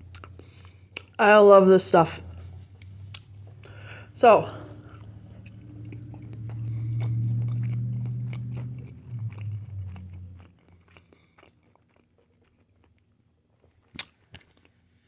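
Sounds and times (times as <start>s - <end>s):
chewing and biting food: 0.0s - 1.2s, 2.3s - 14.9s
person humming mmm: 3.6s - 10.2s.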